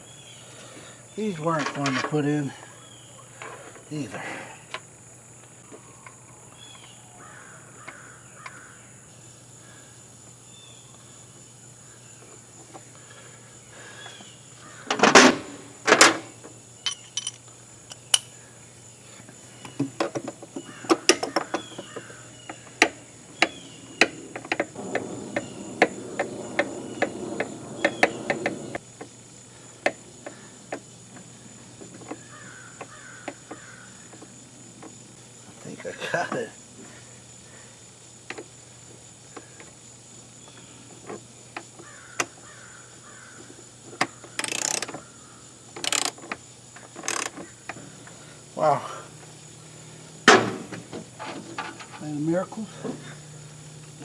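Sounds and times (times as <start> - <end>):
faint bird chirps: 2.5 - 4.1.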